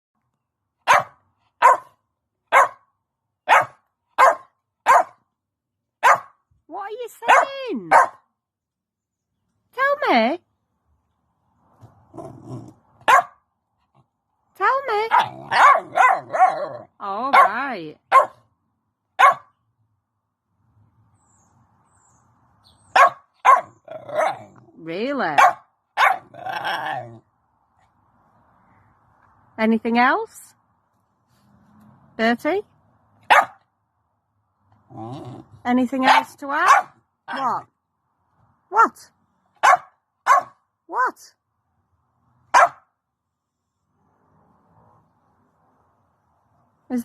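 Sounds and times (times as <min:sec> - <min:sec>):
puppy barking: 0:00.8 - 0:02.9, 0:03.5 - 0:05.2, 0:06.0 - 0:06.4, 0:07.3 - 0:08.2, 0:13.0 - 0:13.4, 0:15.1 - 0:18.4, 0:19.2 - 0:19.5, 0:22.9 - 0:24.6, 0:25.4 - 0:27.0, 0:33.3 - 0:33.6, 0:36.0 - 0:37.0, 0:39.6 - 0:40.6, 0:42.5 - 0:42.9.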